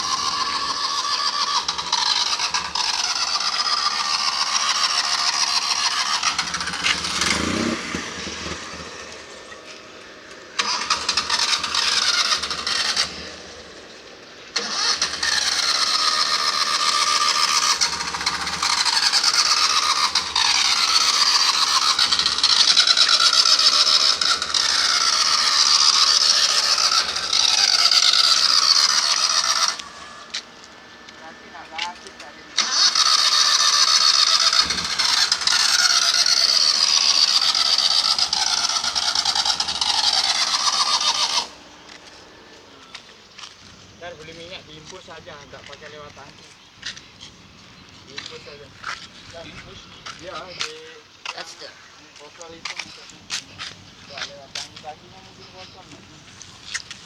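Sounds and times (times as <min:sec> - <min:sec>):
starter cranking engine: 0:00.0 - 0:57.0.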